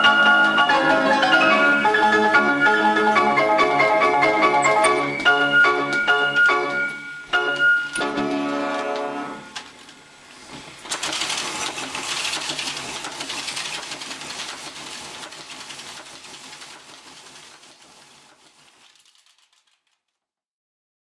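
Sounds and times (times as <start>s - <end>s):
player piano roll rewinding rattle: 0.0s - 19.9s.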